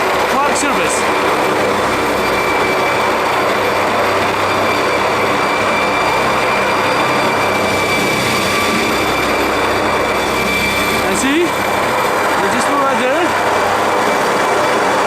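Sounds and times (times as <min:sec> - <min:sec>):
helicopter rotor and engine: 0:00.0 - 0:15.0
high whine: 0:00.0 - 0:15.0.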